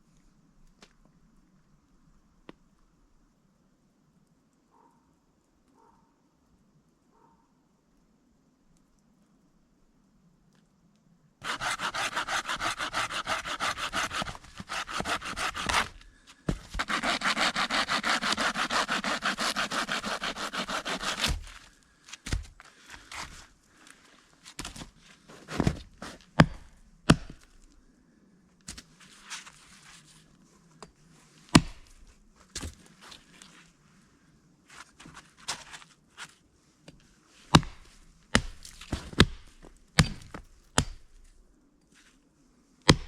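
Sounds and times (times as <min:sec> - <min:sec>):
hand saw cutting wood: 0:11.4 - 0:21.7.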